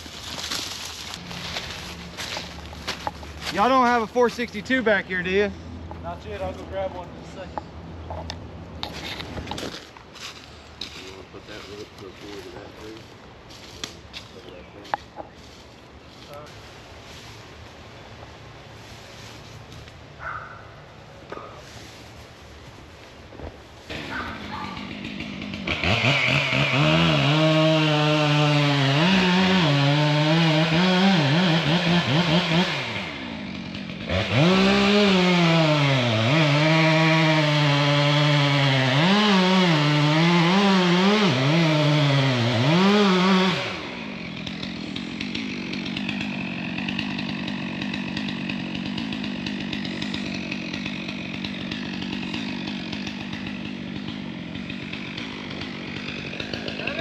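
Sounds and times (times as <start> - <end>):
chainsaw cutting wood: 0.0 - 5.4, 23.9 - 57.0.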